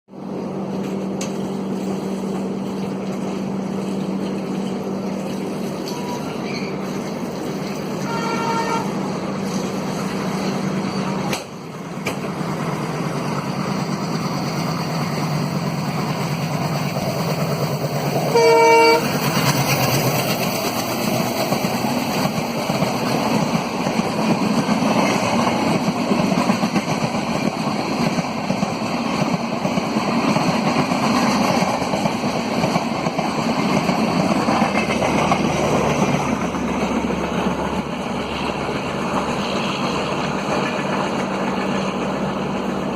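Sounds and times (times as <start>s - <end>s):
diesel locomotive engine accelerating: 0.1s - 42.9s
train rumbling past: 0.1s - 42.9s
locomotive horn blast: 8.0s - 9.0s, 18.3s - 19.2s.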